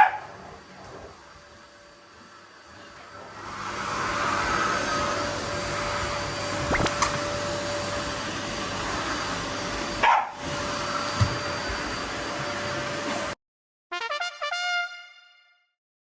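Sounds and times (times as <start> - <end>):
dog barking: 0.0 - 0.4, 10.0 - 10.4
vacuum cleaner running: 0.0 - 13.4.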